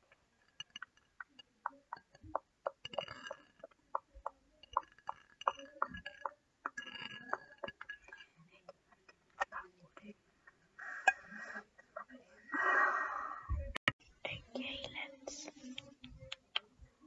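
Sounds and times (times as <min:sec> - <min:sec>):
sticky clicks and crackles: 0:00.0 - 0:10.1.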